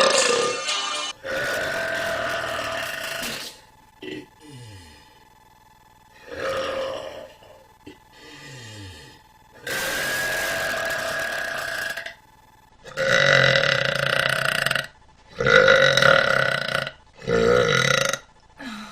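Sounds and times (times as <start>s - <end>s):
person belching: 0.0s - 0.6s, 1.2s - 4.5s, 6.2s - 8.0s, 9.6s - 12.2s, 12.9s - 18.3s.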